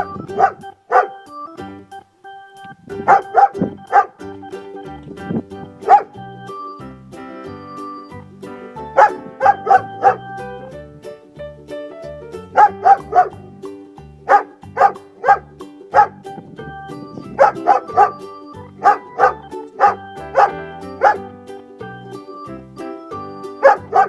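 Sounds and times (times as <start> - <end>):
background music: 0.0 - 24.0
dog barking: 0.3 - 1.2, 3.1 - 4.2, 5.9 - 6.1, 12.6 - 13.3, 14.3 - 16.2, 18.8 - 21.2, 23.6 - 24.0.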